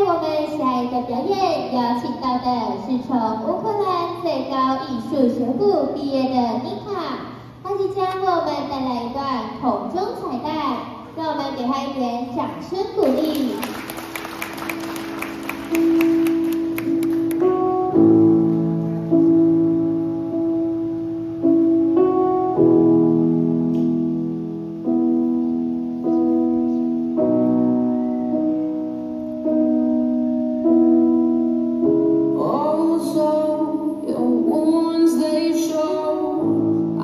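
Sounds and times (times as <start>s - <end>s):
slow piano chords: 12.9s - 37.0s
woman singing: 32.4s - 36.6s.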